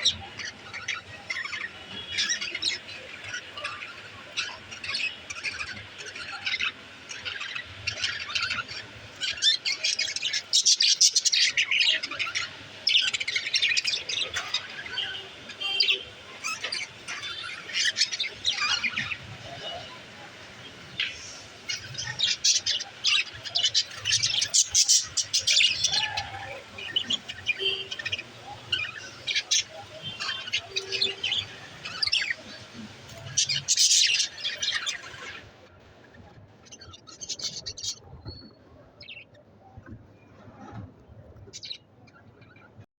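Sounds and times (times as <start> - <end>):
budgerigars chirping: 0.0 - 35.4.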